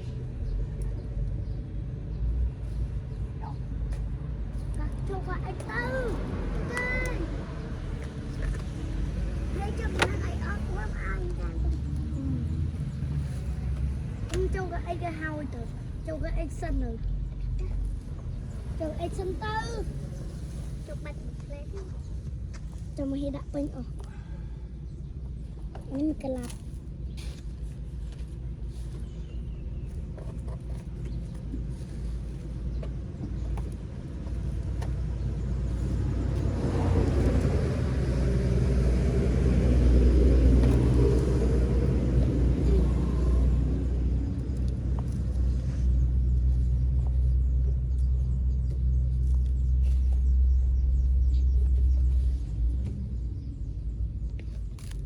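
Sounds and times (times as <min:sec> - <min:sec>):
low engine rumble: 0:00.0 - 0:55.0.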